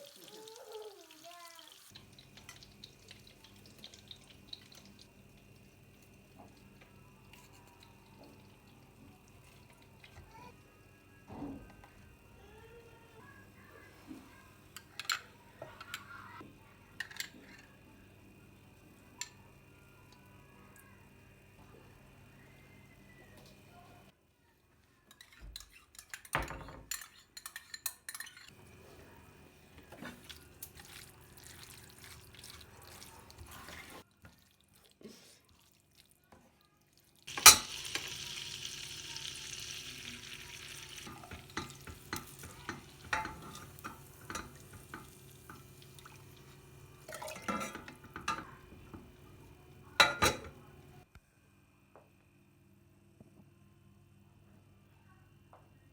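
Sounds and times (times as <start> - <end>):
utensils clinking and scraping: 40.0 - 51.0.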